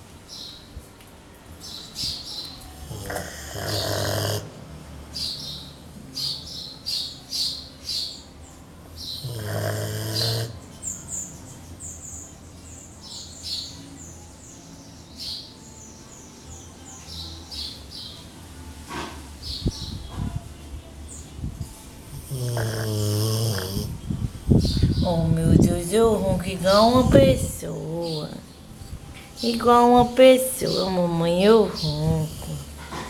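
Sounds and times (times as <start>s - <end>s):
quiet breathing hum: 0.0s - 13.0s, 18.6s - 33.0s
small birds chirping: 0.0s - 33.0s
dog snoring: 2.8s - 6.3s, 9.2s - 11.0s, 22.1s - 24.0s, 31.4s - 33.0s.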